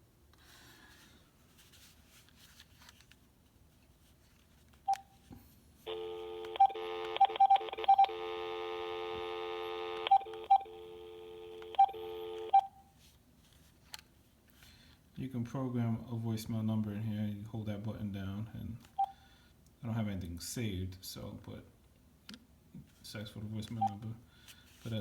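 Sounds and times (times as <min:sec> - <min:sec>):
phone key beeps: 0:05.9 - 0:08.4, 0:09.7 - 0:12.8.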